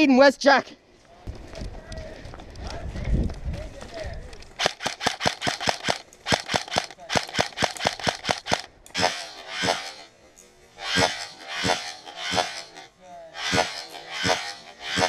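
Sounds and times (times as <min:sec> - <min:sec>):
airsoft rifle rapid shots: 0:04.6 - 0:10.1, 0:10.8 - 0:12.8, 0:13.4 - 0:15.0.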